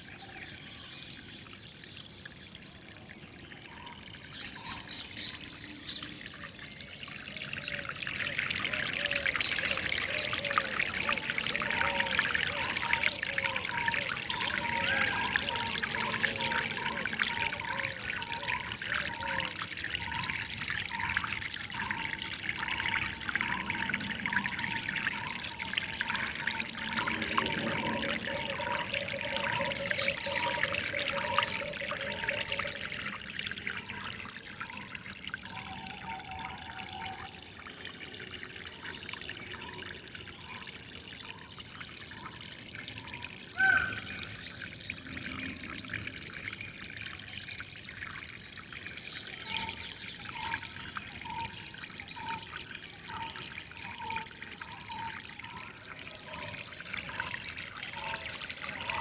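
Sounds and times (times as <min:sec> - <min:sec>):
water trickling and splashing: 0:00.0 - 0:59.0.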